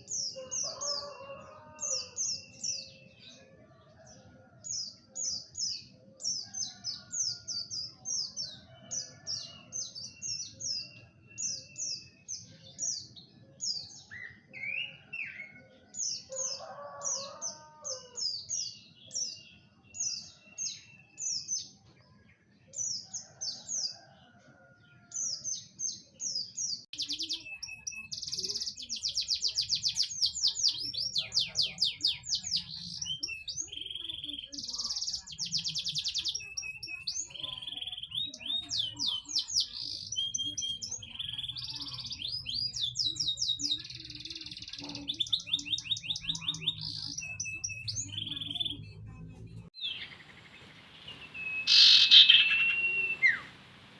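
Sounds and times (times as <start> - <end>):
small songbird chirping: 25.2 - 53.9.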